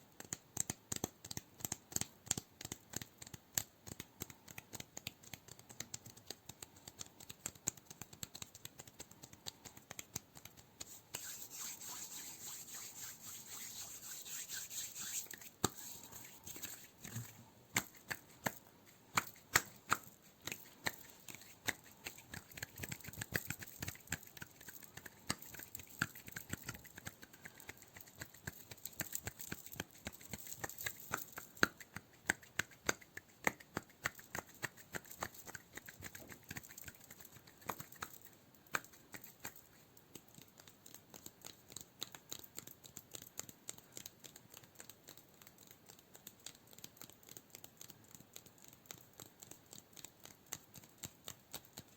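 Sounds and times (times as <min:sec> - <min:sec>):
sharp irregular clicks and crackles: 0:00.1 - 0:10.9, 0:16.5 - 0:51.9
soft rubbing: 0:09.2 - 0:28.3.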